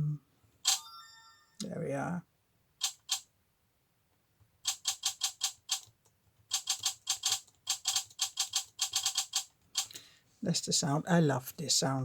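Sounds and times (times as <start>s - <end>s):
keystroke clicks from speakers: 4.7s - 10.0s.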